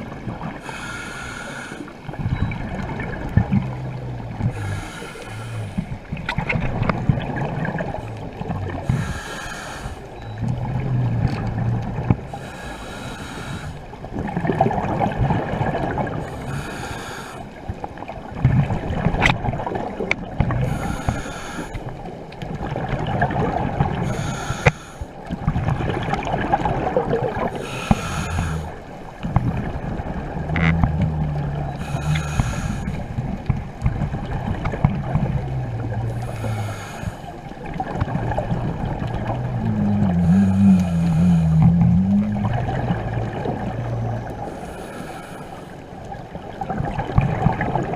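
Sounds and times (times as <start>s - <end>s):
low rumble of moving water: 0.0s - 47.9s
diver breathing through regulator: 0.5s - 2.1s, 3.5s - 6.0s, 7.7s - 14.0s, 16.0s - 17.6s, 20.6s - 22.0s, 23.9s - 25.2s, 27.4s - 29.7s, 30.5s - 33.6s, 35.7s - 37.8s, 39.3s - 45.9s
hissing bubbling exhale: 3.0s - 6.2s, 6.9s - 17.6s, 19.6s - 21.9s, 25.8s - 33.6s, 34.4s - 45.8s.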